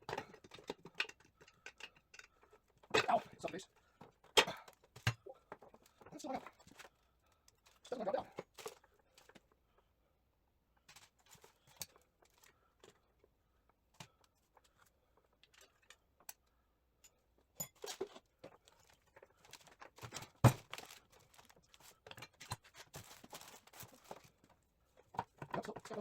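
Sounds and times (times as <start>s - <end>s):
metal parts clicking and knocking: 0.0s - 6.9s, 25.0s - 26.0s.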